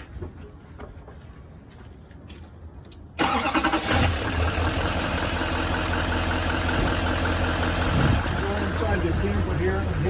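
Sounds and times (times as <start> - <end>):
truck engine starting and idling: 3.1 - 10.0.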